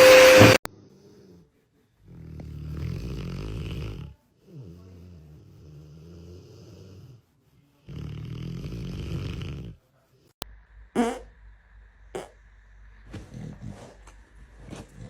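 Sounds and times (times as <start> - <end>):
pet snoring: 0.6 - 9.8, 12.2 - 12.4, 13.1 - 15.0.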